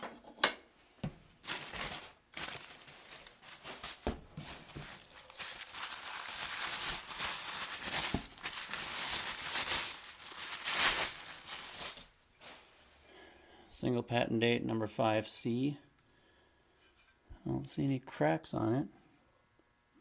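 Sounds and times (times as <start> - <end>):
paper crinkling and rustling: 1.4 - 13.0.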